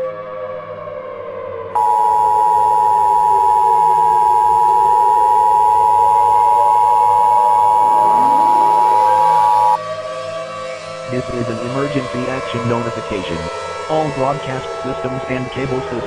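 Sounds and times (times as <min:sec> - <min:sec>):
two-tone alert tone: 0:01.8 - 0:09.8.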